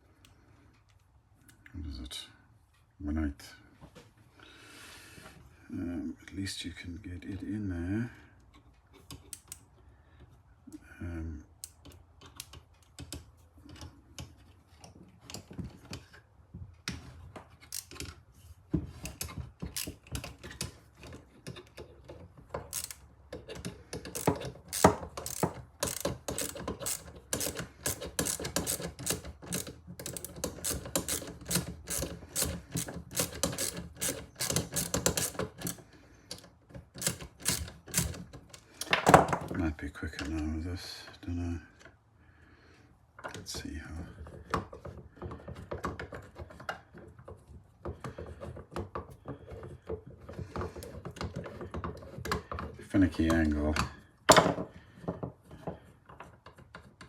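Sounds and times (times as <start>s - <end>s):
ratchet wrench clicking: 22.7s - 23.0s, 24.0s - 35.8s, 37.0s - 38.2s.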